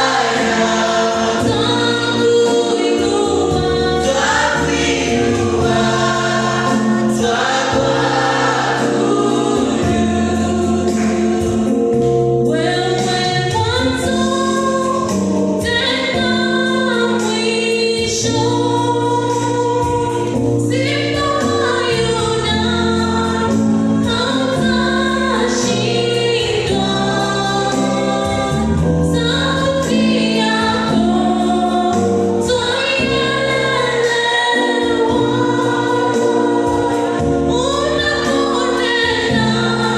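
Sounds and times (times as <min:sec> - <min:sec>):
steady bass: 0:00.0 - 0:17.0
choir singing gospel song: 0:00.0 - 0:39.9
instrumental accompaniment: 0:00.0 - 0:39.9.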